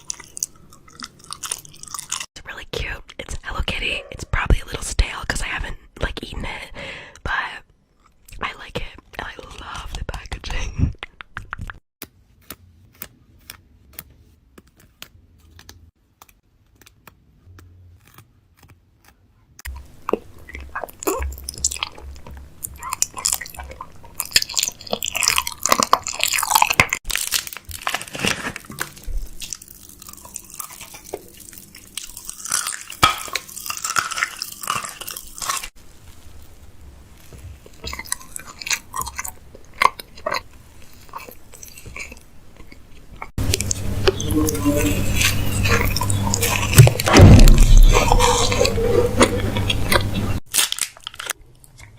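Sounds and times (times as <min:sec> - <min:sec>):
chewing crunchy snack: 0:00.0 - 0:02.3, 0:16.2 - 0:51.9.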